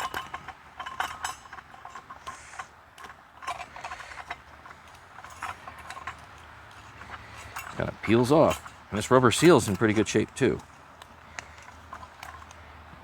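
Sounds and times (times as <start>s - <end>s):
small clicks taps and scrapes: 9.4s - 13.0s.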